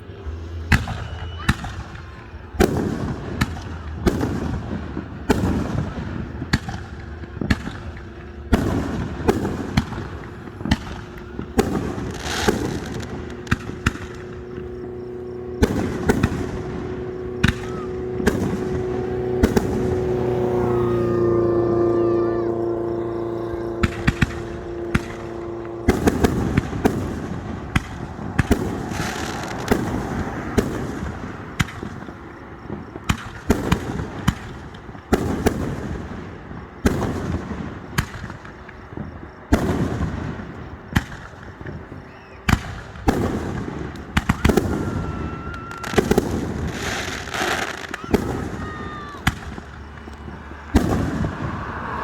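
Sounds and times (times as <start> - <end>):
rumbling booms: 0.0 - 20.1, 22.6 - 41.9, 47.9 - 52.0
droning tone: 0.0 - 33.0, 49.4 - 52.0
firework bangs: 0.0 - 52.0.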